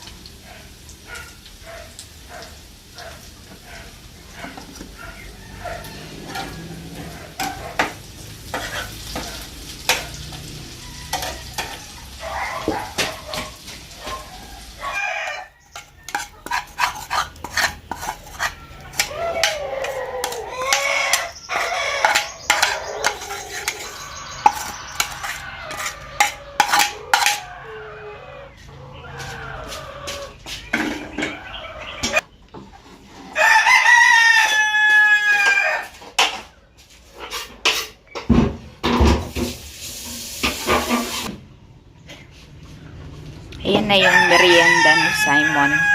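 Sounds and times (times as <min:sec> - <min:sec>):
food frying: 0:00.0 - 0:27.4, 0:38.9 - 0:41.4
utensil scraping a pan: 0:03.5 - 0:14.4, 0:15.2 - 0:27.8, 0:35.4 - 0:38.3, 0:38.9 - 0:41.3
rooster crowing: 0:05.0 - 0:07.8, 0:09.9 - 0:16.5, 0:18.4 - 0:32.2, 0:33.3 - 0:36.1, 0:43.7 - 0:45.9.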